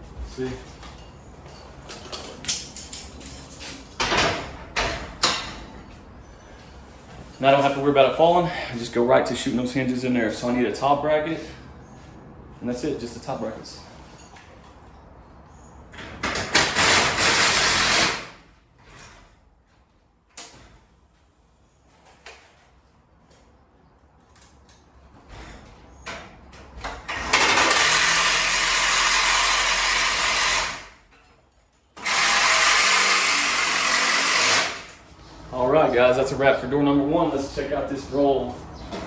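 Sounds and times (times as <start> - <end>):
impact driver driving screws: 16.3 - 18.3, 32.0 - 34.9.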